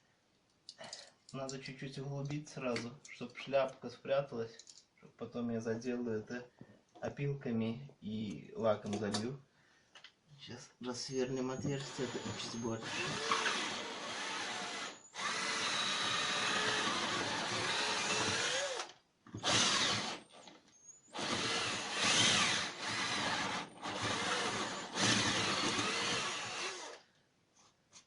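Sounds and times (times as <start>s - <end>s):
electric drill boring into wood: 11.7s - 27.0s.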